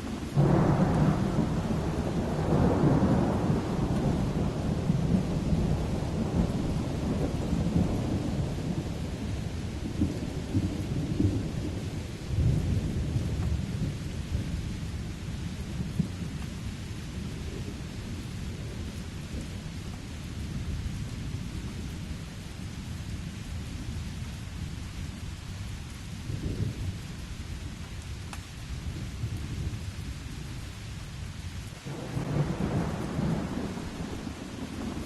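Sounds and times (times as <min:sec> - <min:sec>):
steady rain: 0:00.0 - 0:35.0
thunder rumbling: 0:00.4 - 0:19.8, 0:31.6 - 0:35.0.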